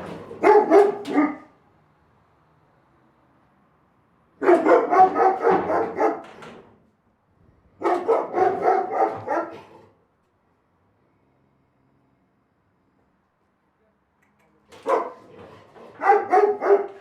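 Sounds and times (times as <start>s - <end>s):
big dog barking: 0.0s - 1.6s, 4.4s - 6.4s, 7.8s - 10.0s, 14.8s - 17.0s.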